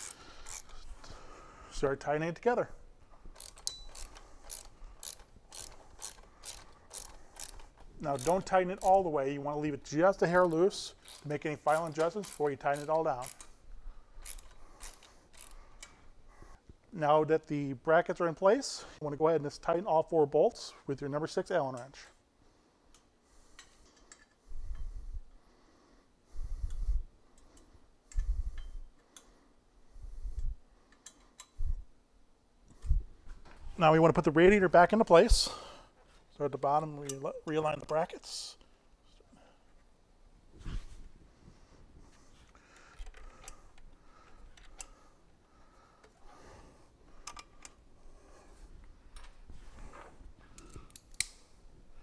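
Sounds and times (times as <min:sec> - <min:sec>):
allen wrench clicking on bolts: 0:00.0 - 0:00.9, 0:03.3 - 0:09.2, 0:10.3 - 0:13.6, 0:14.2 - 0:16.0, 0:47.2 - 0:47.8.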